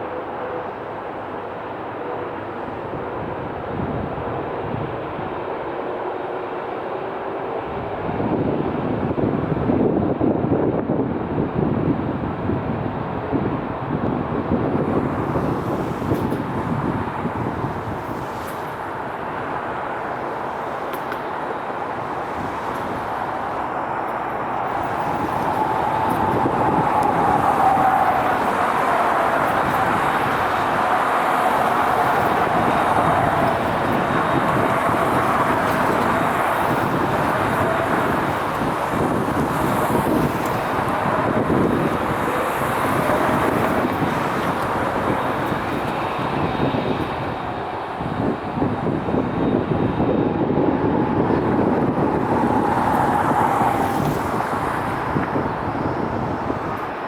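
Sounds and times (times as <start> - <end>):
jet airliner passing: 0.0 - 57.0
falling engine whine: 13.5 - 57.0.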